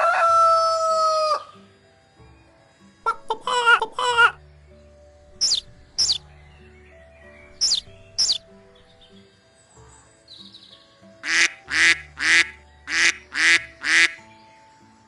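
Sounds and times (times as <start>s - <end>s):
soft background music: 0.0s - 15.0s
duck quacking: 3.1s - 4.4s, 5.4s - 6.2s, 7.6s - 8.4s, 11.2s - 14.2s
high bird chirps: 5.3s - 9.3s.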